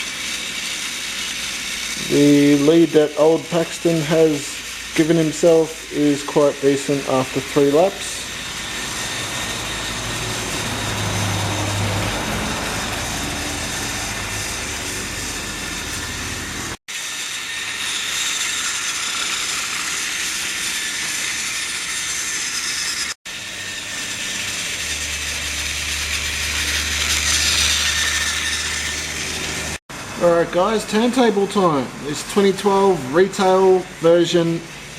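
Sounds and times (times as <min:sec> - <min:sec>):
wheels rattling on plastic track: 0:00.0 - 0:10.0
toy train motors whirring: 0:00.0 - 0:29.8, 0:30.9 - 0:34.9.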